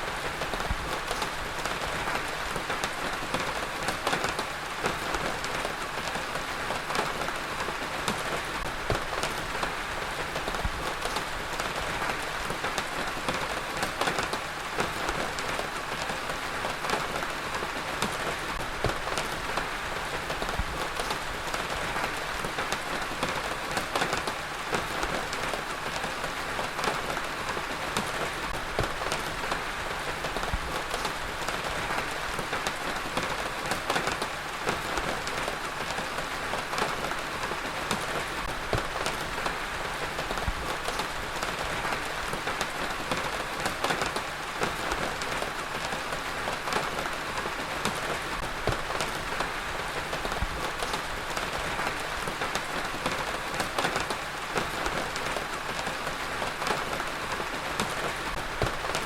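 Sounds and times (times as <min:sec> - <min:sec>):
heavy rain falling: 0:00.0 - 0:59.0.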